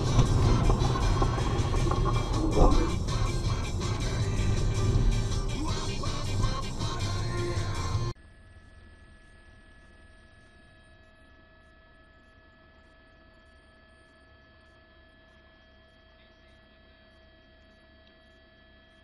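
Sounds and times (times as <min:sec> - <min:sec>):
faint electrical hum: 0:08.2 - 0:19.0.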